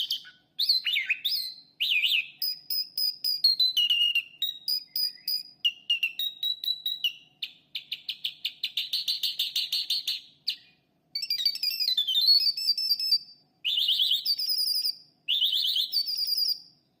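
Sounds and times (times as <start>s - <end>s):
lark singing trills and whistles: 0.0s - 16.8s.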